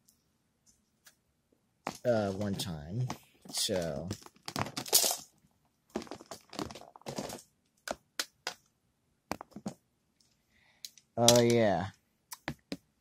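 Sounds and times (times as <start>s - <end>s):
plastic toy guns rustling and clattering: 1.9s - 8.7s.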